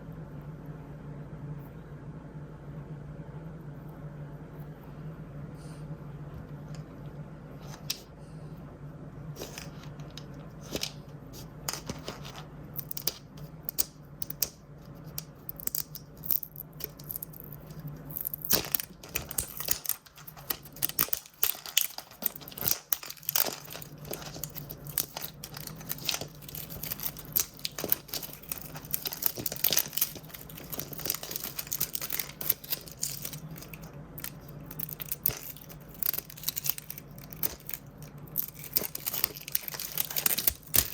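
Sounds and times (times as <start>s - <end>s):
steady low hum: 0.0s - 40.9s
packaging being torn and crinkled: 12.8s - 40.9s.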